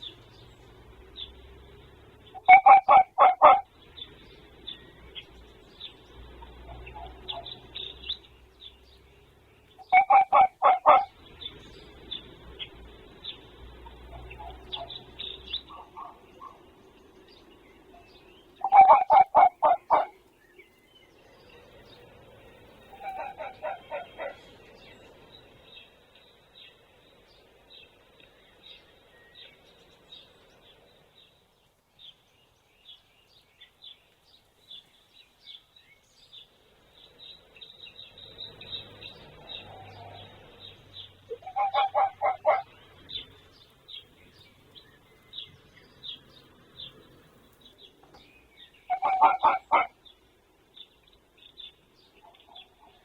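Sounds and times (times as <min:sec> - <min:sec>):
fox barking hoarsely: 0:02.4 - 0:03.7, 0:09.8 - 0:11.2, 0:15.7 - 0:16.7, 0:18.6 - 0:20.2, 0:22.9 - 0:24.5, 0:41.3 - 0:42.8, 0:48.9 - 0:50.0.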